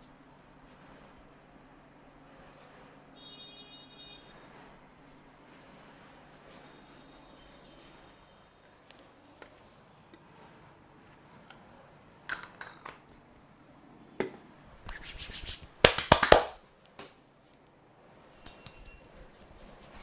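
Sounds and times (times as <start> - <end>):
hands rubbing skin: 14.8 - 16.6, 18.5 - 20.0
sharp slaps on skin: 15.8 - 16.6.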